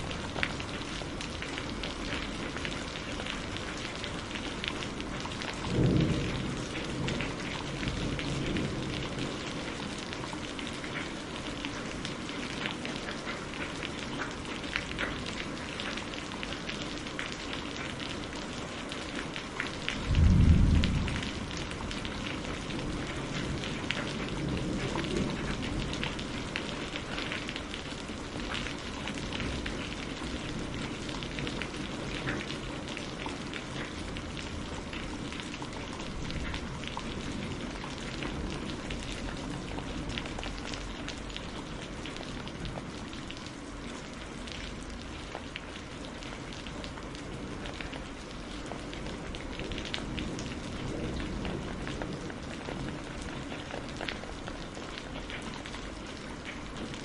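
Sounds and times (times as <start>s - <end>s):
steady rain patter: 0.0s - 57.0s
low rumble: 20.1s - 21.6s.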